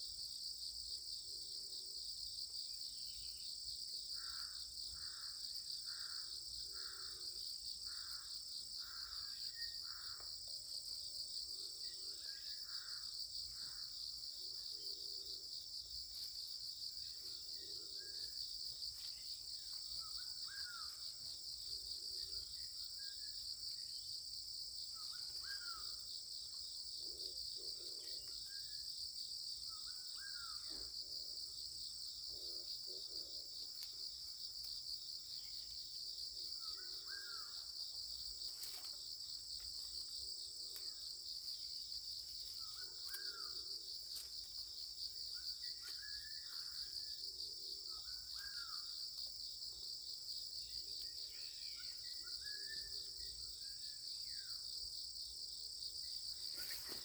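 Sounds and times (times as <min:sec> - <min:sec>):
insects trilling: 0:00.0 - 0:57.0
faint bird chirps: 0:04.2 - 0:10.7, 0:24.9 - 0:26.1, 0:45.3 - 0:49.0, 0:50.6 - 0:54.7.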